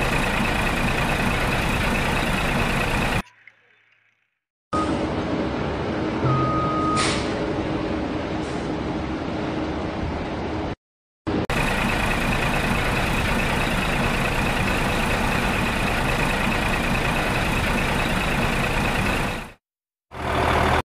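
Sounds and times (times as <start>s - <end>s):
motor vehicle running: 0.0s - 3.2s, 11.3s - 20.8s.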